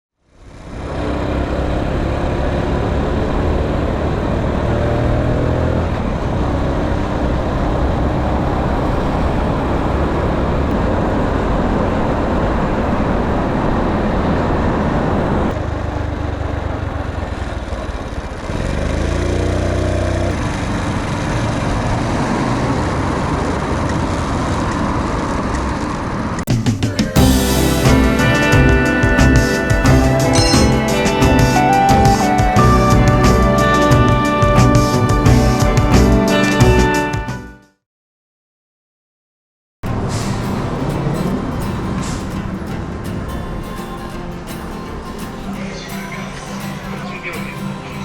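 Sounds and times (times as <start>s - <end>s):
moped engine accelerating: 15.6s - 23.8s, 26.8s - 37.4s.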